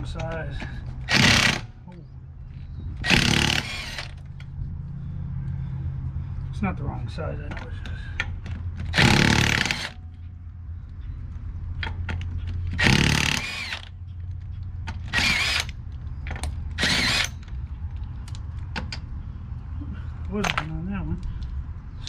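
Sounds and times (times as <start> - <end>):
steady low hum: 0.0 - 22.0
power tool spinning lug nuts: 1.0 - 1.7, 3.0 - 4.4, 8.6 - 10.0, 12.2 - 14.0, 14.9 - 17.6.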